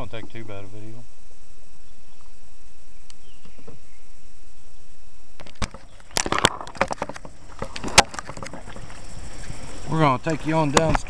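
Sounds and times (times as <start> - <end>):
sharp knocks and clicks: 5.4 - 9.0.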